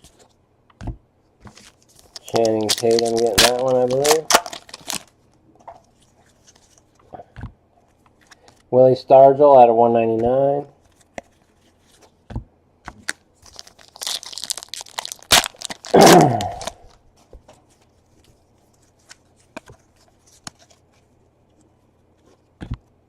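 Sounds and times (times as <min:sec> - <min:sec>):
foil wrapper crinkling: 0:01.5 - 0:05.2, 0:13.0 - 0:17.0
foil pack tearing: 0:01.6 - 0:05.1, 0:13.5 - 0:16.8.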